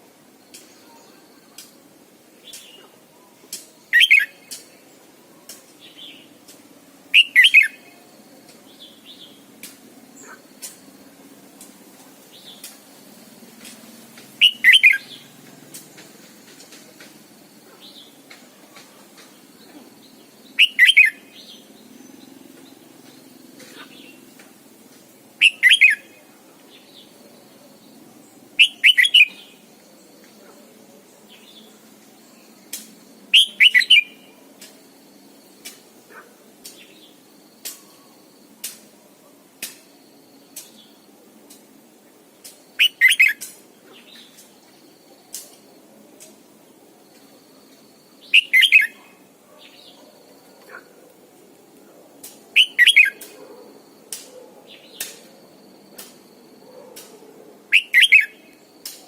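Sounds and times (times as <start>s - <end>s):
bird singing loud short phrases: 3.9s - 4.6s, 7.1s - 7.9s, 14.4s - 15.2s, 20.6s - 21.6s, 25.4s - 26.1s, 28.6s - 29.6s, 33.3s - 34.2s, 42.8s - 43.5s, 48.2s - 50.0s, 52.6s - 53.3s, 57.7s - 58.4s.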